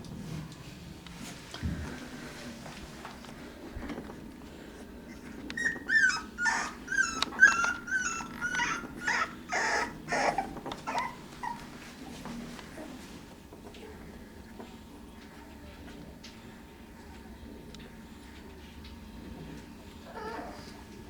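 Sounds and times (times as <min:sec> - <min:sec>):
puppies whimpering: 0:04.8 - 0:13.2, 0:20.0 - 0:21.0.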